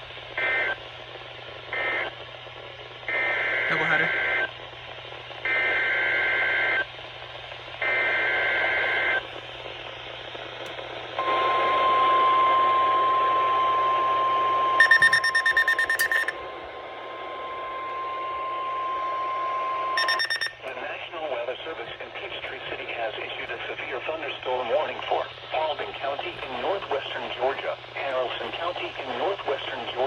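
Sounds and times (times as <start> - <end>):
steady warning alarm tone: 11.2 - 16.4, 17.1 - 20.6
two-tone digital warble bursts: 14.8 - 16.3, 20.0 - 20.5
rapidly pulsing electronic beep: 14.8 - 16.4, 20.0 - 20.6.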